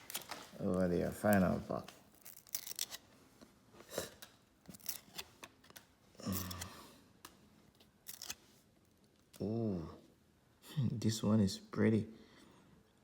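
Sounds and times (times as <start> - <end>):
foil card pack tearing: 2.2 - 3.0, 8.0 - 8.4.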